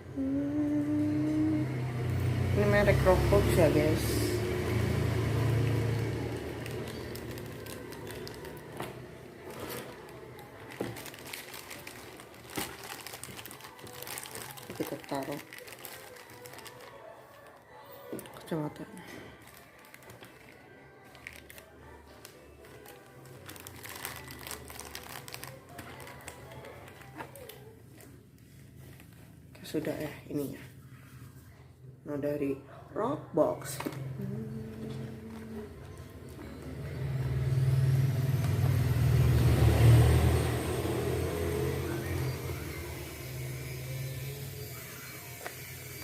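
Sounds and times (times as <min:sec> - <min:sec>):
plastic packaging crinkling: 0:05.0 - 0:29.4.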